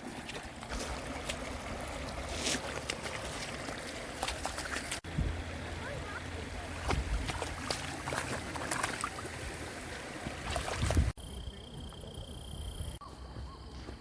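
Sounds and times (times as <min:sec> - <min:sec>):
dogs splashing through water: 0:00.0 - 0:11.2
creek water running: 0:00.0 - 0:12.3.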